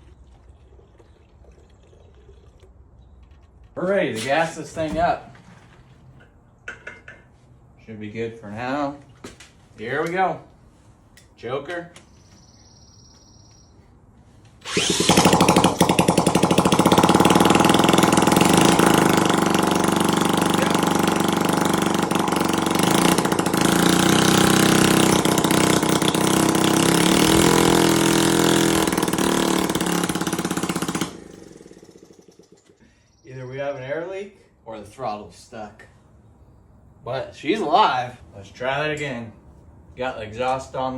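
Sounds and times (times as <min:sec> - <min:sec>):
small motorcycle engine revving: 0:14.6 - 0:32.8.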